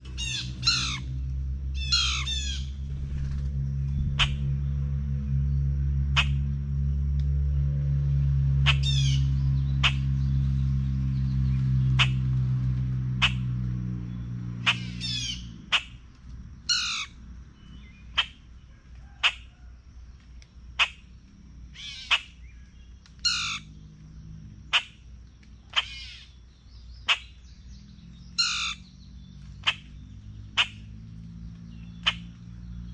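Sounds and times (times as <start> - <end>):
bird calling: 0.0 - 4.5, 8.6 - 10.3, 14.6 - 19.7, 20.8 - 21.1, 21.7 - 23.8, 24.7 - 31.0, 31.6 - 32.9.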